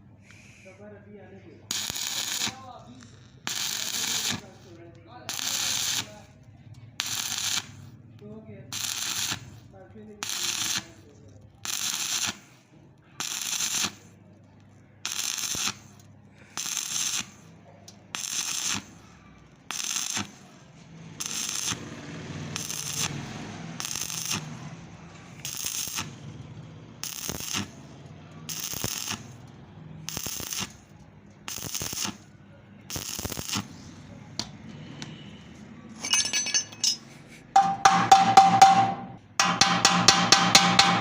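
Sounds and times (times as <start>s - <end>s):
welding arc crackling: 1.7s - 6.4s, 7.0s - 8.0s, 8.7s - 12.6s, 13.2s - 14.2s, 15.0s - 19.0s, 19.6s - 20.5s, 21.1s - 24.7s, 25.3s - 32.3s, 32.9s - 33.7s.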